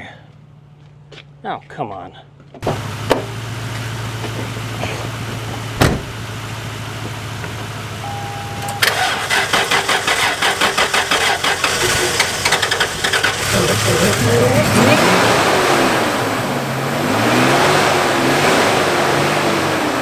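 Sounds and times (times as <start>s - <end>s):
engine cranking by starter: 2.6s - 16.5s
short beep: 8.0s - 8.9s.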